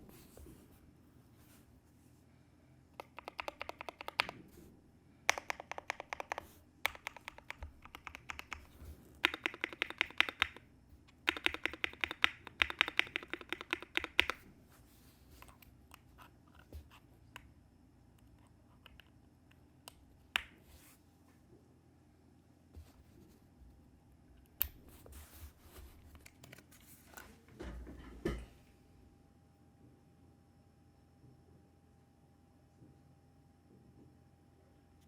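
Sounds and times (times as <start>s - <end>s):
mechanical keyboard typing: 3.0s - 4.4s, 5.3s - 14.4s.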